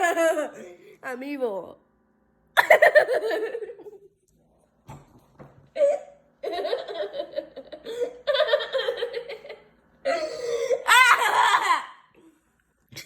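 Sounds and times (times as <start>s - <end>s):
person laughing hard: 10.8s - 12.0s.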